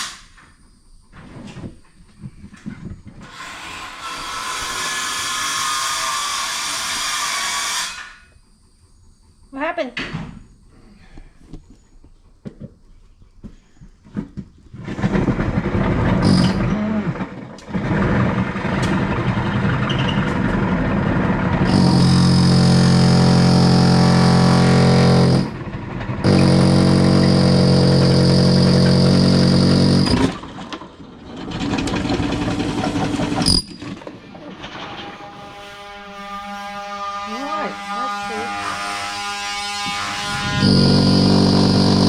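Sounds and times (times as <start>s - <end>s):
electric power tool running: 20.2s - 25.6s, 26.2s - 30.4s, 39.8s - 42.0s.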